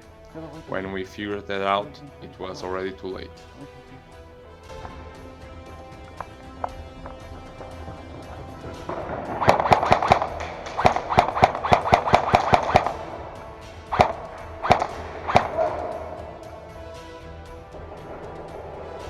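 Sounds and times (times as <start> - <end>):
background music: 0.0 - 19.0
airsoft guns firing: 8.8 - 13.1.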